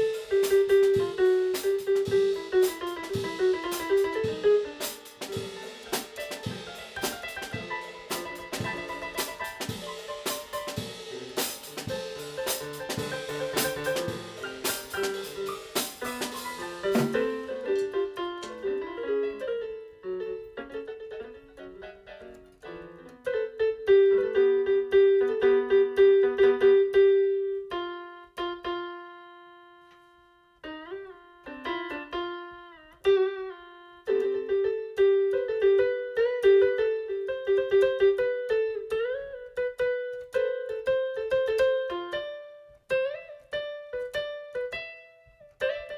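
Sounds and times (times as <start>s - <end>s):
drum hits: 0.0s - 18.6s
electric keyboard music: 0.0s - 45.9s.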